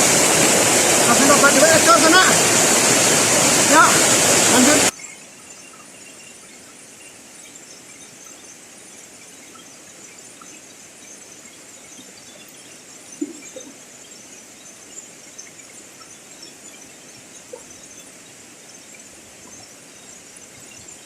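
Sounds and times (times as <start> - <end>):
faint crackling ticks: 4.9 - 21.0.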